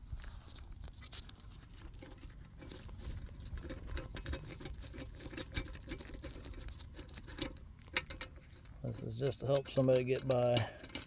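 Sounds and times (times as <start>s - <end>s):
metallic clicks and rattles: 9.3s - 11.0s.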